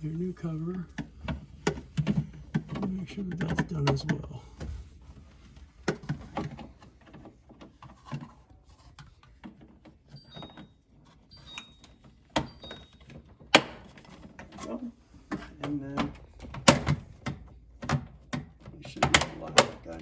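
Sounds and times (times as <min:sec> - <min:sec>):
plastic clicks and rubbing: 0:00.8 - 0:04.3
sharp plastic knocks: 0:13.5 - 0:14.1, 0:15.3 - 0:20.0.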